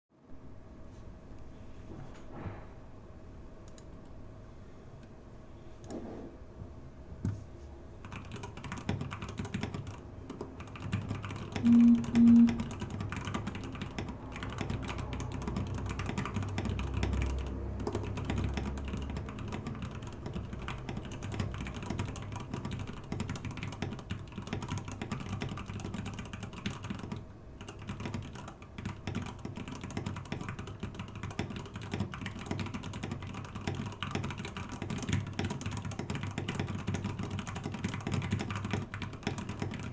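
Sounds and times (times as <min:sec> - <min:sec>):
short low-pitched blips: 0:11.6 - 0:12.7.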